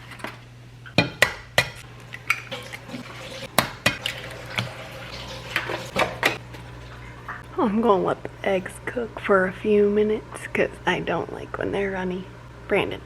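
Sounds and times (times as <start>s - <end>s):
steady low hum: 0.0s - 13.0s
pot and utensils clinking: 1.0s - 6.4s.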